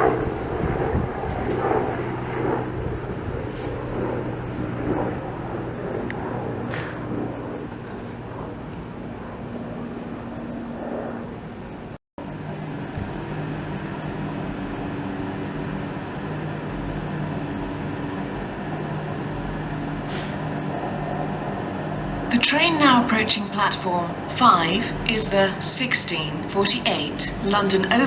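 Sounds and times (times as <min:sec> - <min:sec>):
train mechanical hum: 0:11.3 - 0:28.0.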